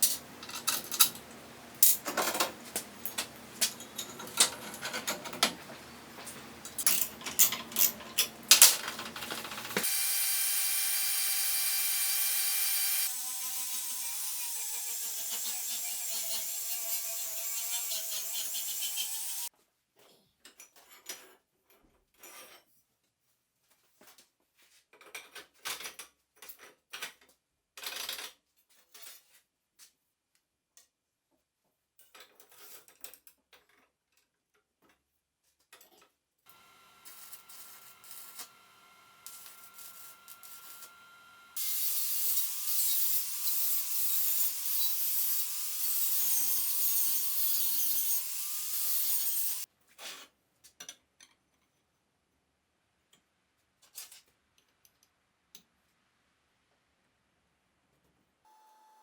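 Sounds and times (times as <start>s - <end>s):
power tool running: 8.3s - 15.1s, 36.5s - 49.6s.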